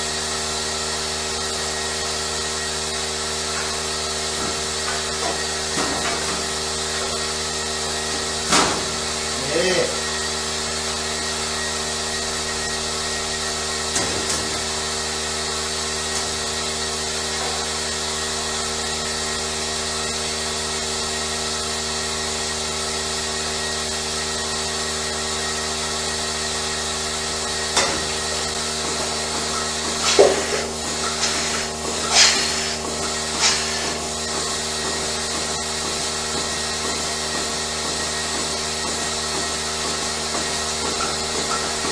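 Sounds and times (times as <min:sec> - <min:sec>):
small motor humming: 0:06.4 - 0:41.8.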